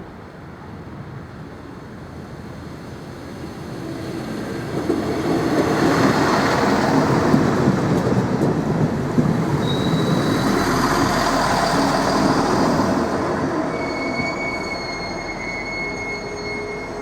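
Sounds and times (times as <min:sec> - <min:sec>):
electric train running noise: 0:04.0 - 0:17.0.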